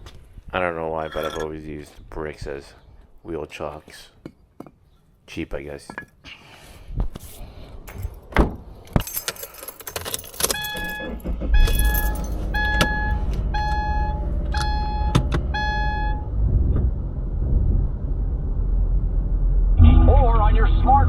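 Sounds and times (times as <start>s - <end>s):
keys jangling: 9.0s - 11.0s, 11.6s - 12.8s
clunks: 10.1s - 16.9s
car warning chime: 10.5s - 16.4s.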